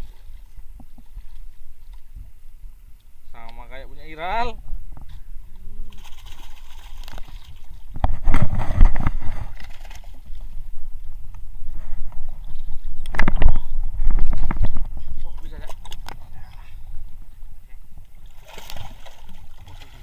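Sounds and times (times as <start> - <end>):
wind buffeting microphone: 4.4 - 18.2.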